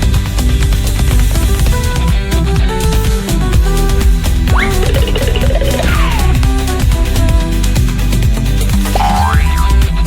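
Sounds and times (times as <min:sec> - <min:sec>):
loud electronic music: 0:00.0 - 0:10.0
falling sound effect: 0:04.5 - 0:06.4, 0:08.9 - 0:09.7.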